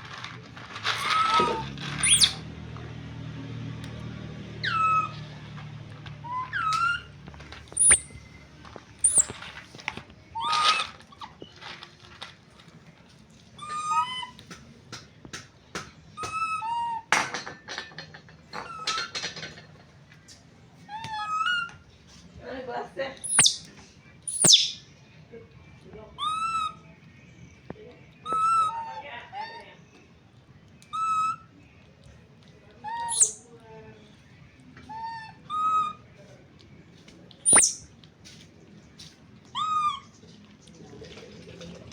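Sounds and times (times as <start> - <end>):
treats clicking and rustling on floor: 0.0 - 2.9, 5.2 - 13.6
baby monkey high-pitched calls: 1.0 - 2.4, 4.6 - 5.4, 6.2 - 8.2, 9.0 - 9.4, 13.6 - 14.4, 16.2 - 17.0, 20.9 - 21.8, 23.2 - 23.7, 24.3 - 24.9, 26.2 - 26.9, 28.2 - 29.7, 30.8 - 31.5, 32.8 - 33.5, 34.9 - 36.0, 37.4 - 37.9, 39.4 - 40.1.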